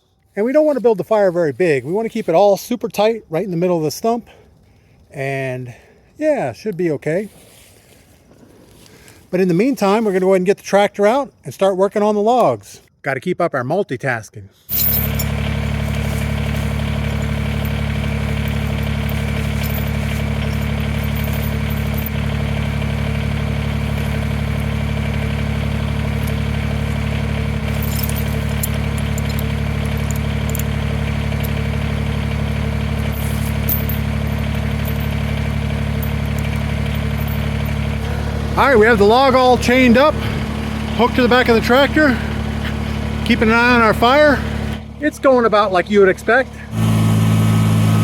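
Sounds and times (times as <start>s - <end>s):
tractor engine idling: 14.7s - 48.0s
light metal clinks: 18.4s - 22.2s, 27.7s - 30.7s.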